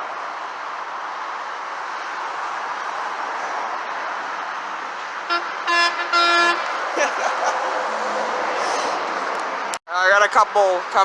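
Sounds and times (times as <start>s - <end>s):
road traffic noise: 0.0s - 11.0s
truck horn blasts: 5.3s - 6.7s.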